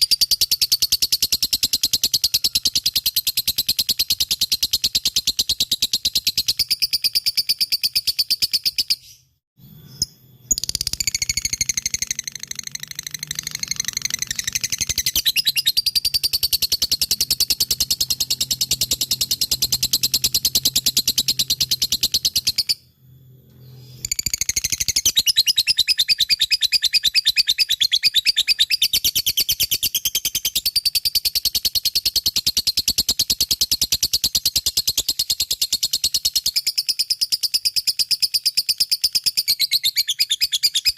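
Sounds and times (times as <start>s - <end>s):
lovebird chattering trill: 10.0s - 22.8s.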